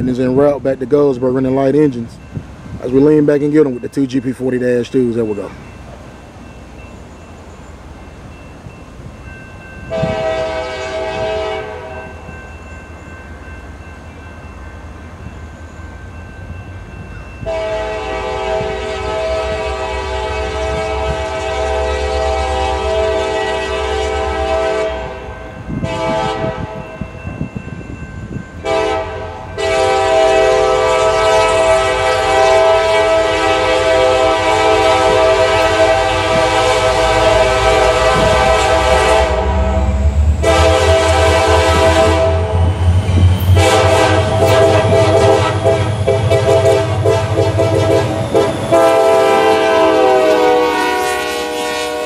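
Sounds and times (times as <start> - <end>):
diesel locomotives rumbling: 0.0 - 52.0
locomotive horn blasts: 9.9 - 12.3, 17.4 - 27.0, 28.6 - 42.7, 43.4 - 52.0.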